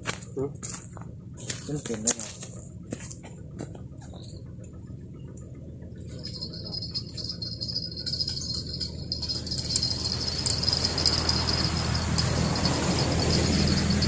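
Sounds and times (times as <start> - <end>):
low steady hum: 0.0 - 14.0
crickets chirring: 6.2 - 14.0
broad rushing noise: 7.3 - 14.0.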